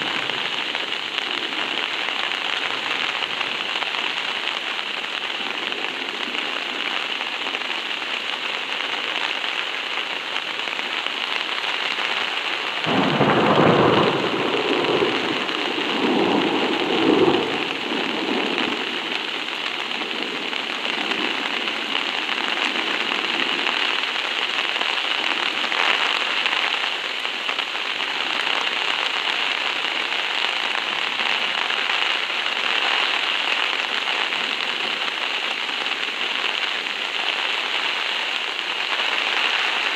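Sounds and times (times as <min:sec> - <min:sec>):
thunder rumbling: 0:00.0 - 0:03.7, 0:12.7 - 0:24.1
heavy rain drumming on a tarp: 0:00.0 - 0:39.9.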